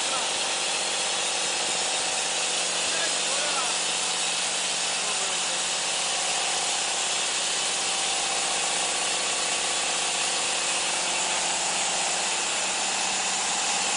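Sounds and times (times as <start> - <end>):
band saw blade sawing wood: 0.0 - 13.9.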